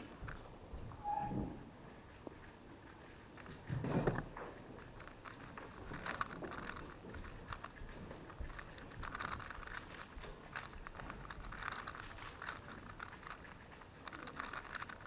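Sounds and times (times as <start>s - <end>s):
puzzle cube clicking: 3.3s - 15.0s.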